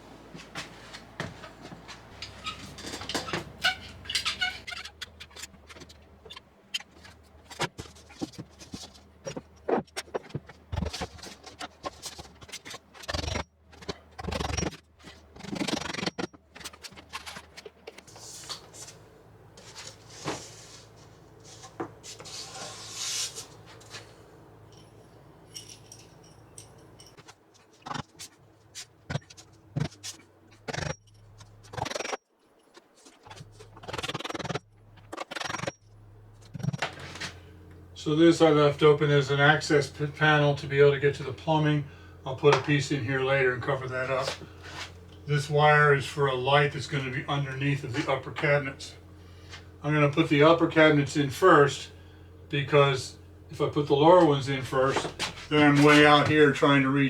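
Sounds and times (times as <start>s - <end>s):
knocks clicks and scrapes: 0.6s - 19.0s, 25.6s - 37.4s, 54.3s - 56.6s.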